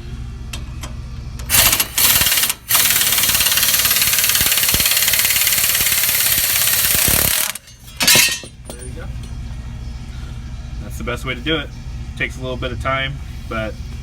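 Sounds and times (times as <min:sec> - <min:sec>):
impact wrench hammering: 0:01.5 - 0:08.8.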